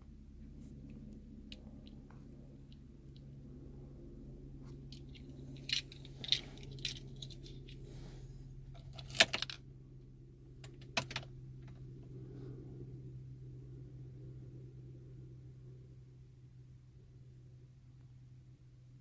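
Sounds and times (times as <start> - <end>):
steady low hum: 0.0 - 19.0
metallic clicks and jingles: 4.8 - 7.9.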